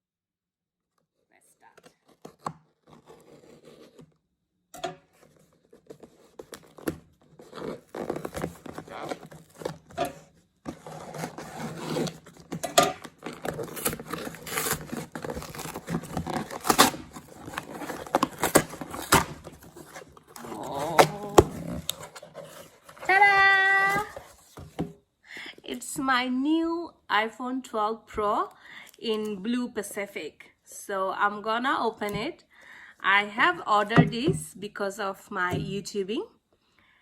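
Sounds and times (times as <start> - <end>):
packaging tearing and rustling: 1.6 - 4.2, 5.2 - 24.6.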